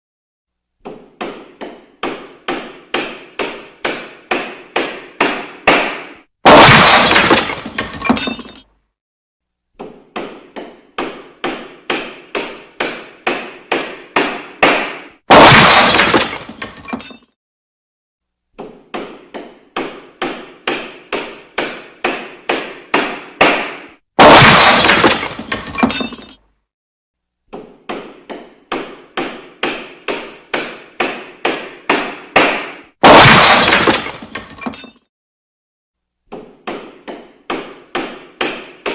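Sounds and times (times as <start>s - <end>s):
loud smashing crash: 6.5s - 8.6s, 15.3s - 16.9s, 24.2s - 26.2s, 33.0s - 34.7s.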